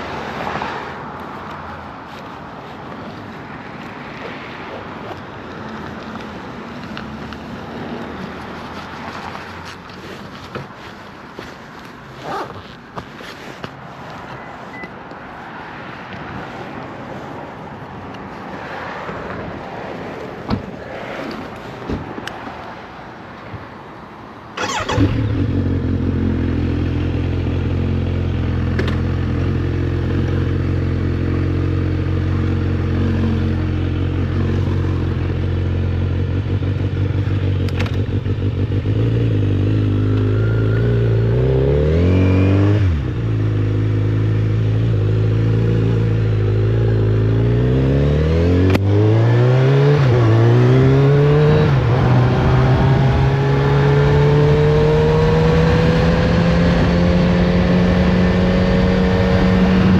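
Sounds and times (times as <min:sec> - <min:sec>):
motorcycle engine starting: 0:24.6 - 0:26.8
motorcycle accelerating through gears: 0:24.6 - 0:59.9.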